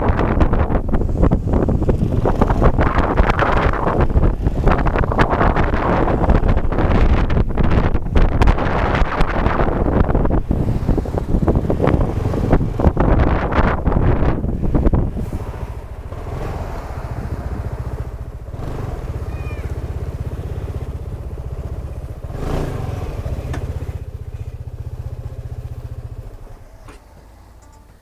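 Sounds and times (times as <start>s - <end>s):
scooter engine running: 0.7s - 27.6s.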